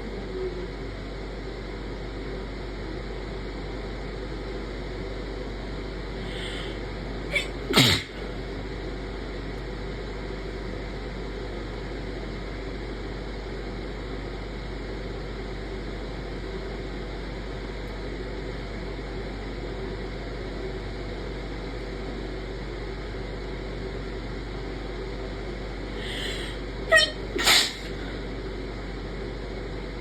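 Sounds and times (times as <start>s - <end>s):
background hiss and hum: 0.0s - 30.0s
person sneezing: 7.3s - 8.3s, 26.0s - 28.0s
catch of breath: 26.0s - 26.6s.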